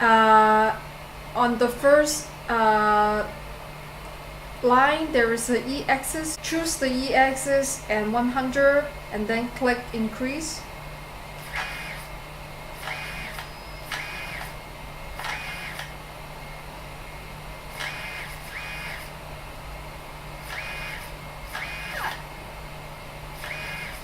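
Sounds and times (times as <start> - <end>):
steady low hum: 0.0 - 24.0
stepper motor whine: 11.3 - 16.6, 17.6 - 19.3, 20.3 - 22.4, 23.2 - 24.0.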